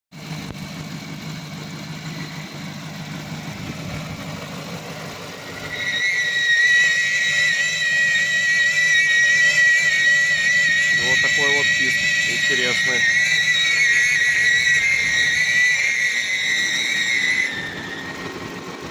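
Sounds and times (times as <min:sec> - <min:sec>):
car engine idling: 0:00.2 - 0:06.1, 0:06.8 - 0:18.9
high steady whistle: 0:05.6 - 0:18.7.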